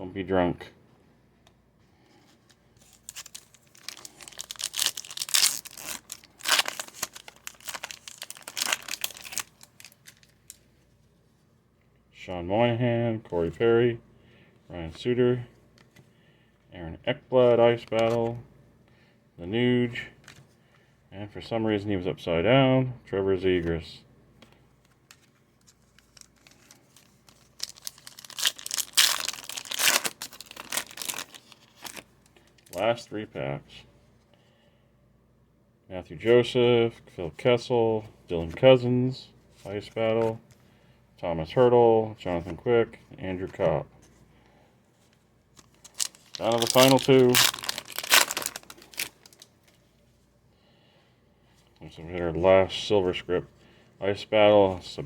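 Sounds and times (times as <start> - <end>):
card pack wrapper crinkling: 2.8 - 10.7, 25.1 - 32.8, 45.5 - 49.8.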